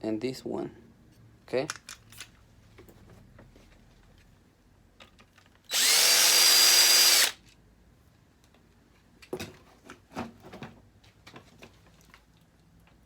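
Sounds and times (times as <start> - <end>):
power drill backing out screw: 5.7 - 7.4.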